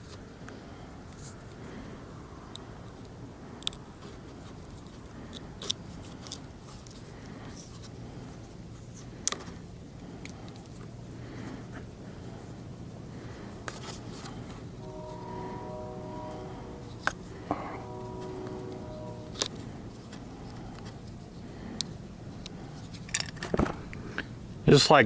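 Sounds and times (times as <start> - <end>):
low hum: 0.0 - 24.6.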